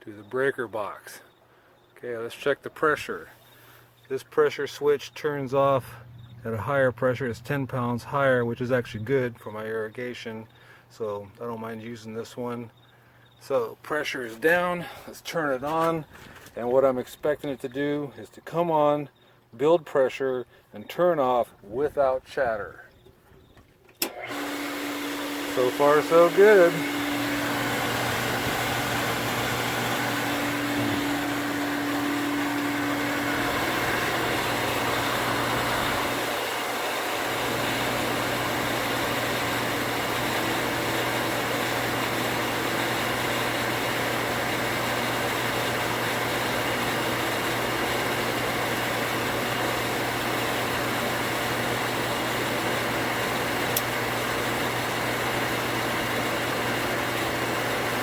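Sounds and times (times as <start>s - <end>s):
pump motor running: 24.0s - 58.0s.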